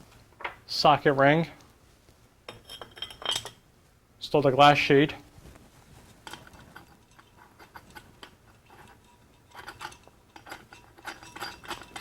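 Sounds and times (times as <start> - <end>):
glass clinks and scrapes: 2.5 - 3.6, 6.3 - 12.0.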